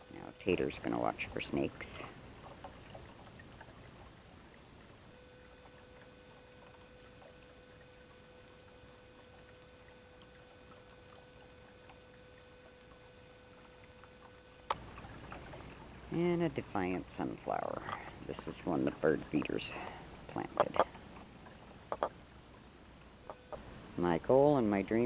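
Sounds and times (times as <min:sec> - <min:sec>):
fountain running water: 0:00.0 - 0:25.0
steady hum: 0:00.0 - 0:25.0.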